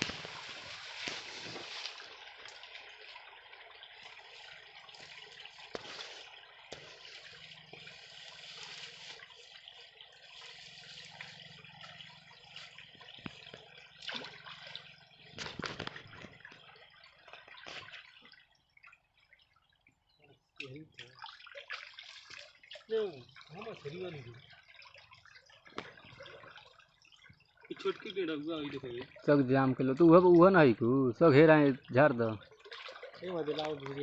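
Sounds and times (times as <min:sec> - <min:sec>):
sharp knocks or splashes: 0:00.0 - 0:02.1, 0:13.0 - 0:16.7, 0:25.7 - 0:26.4
water flowing in canal: 0:00.0 - 0:34.0.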